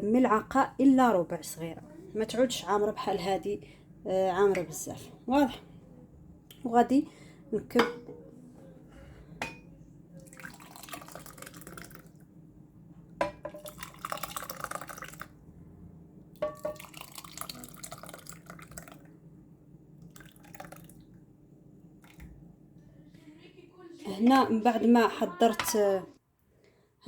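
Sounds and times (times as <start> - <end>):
juice pouring into glasses: 10.2 - 12.2, 13.6 - 15.4, 16.6 - 19.1, 20.0 - 21.0
glass clinking: 16.4 - 17.0.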